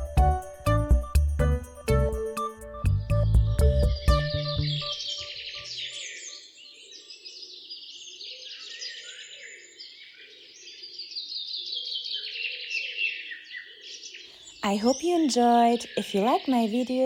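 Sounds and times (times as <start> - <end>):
music track: 0.0 - 5.4
small birds chirping: 1.8 - 17.0.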